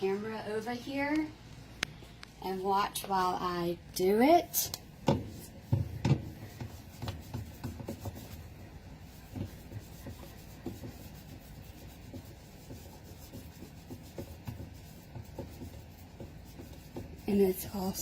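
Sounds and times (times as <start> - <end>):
wet cloth scrubbing: 6.3 - 18.0.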